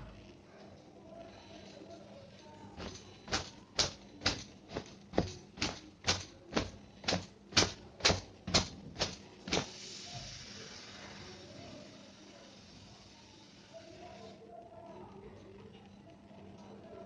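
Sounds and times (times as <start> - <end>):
towel striking wet hair: 2.8 - 9.7.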